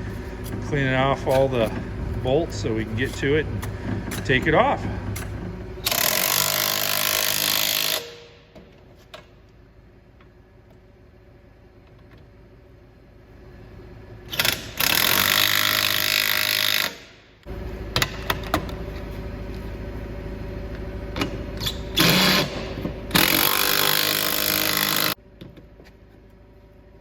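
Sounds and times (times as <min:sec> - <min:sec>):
steady low hum: 0:00.0 - 0:15.5, 0:17.0 - 0:27.0
power tool running hard: 0:05.8 - 0:08.1, 0:22.0 - 0:25.2.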